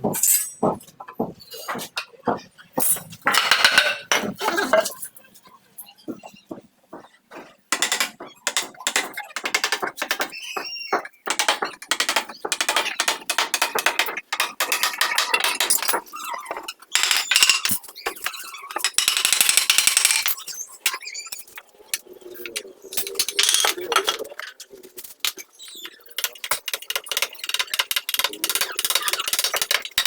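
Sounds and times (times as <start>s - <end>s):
tools knocking on wood: 0.0s - 4.8s, 6.1s - 16.1s.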